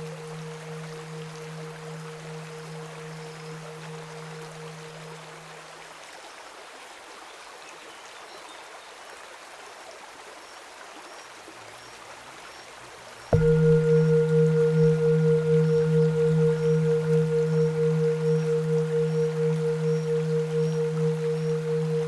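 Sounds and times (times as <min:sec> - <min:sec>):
ringing tone: 0:00.0 - 0:05.6, 0:13.4 - 0:22.0
singing bowl struck: 0:00.0 - 0:05.6, 0:13.4 - 0:22.0.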